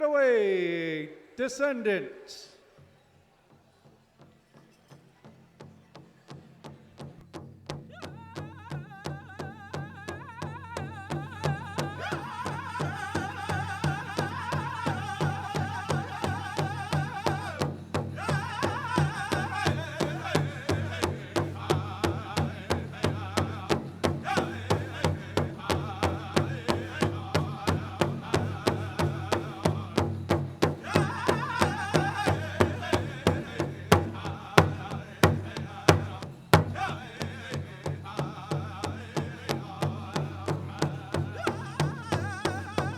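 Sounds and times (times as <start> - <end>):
drum beating steady pulse: 5.9 - 42.9
group singing in high voices: 11.0 - 42.9.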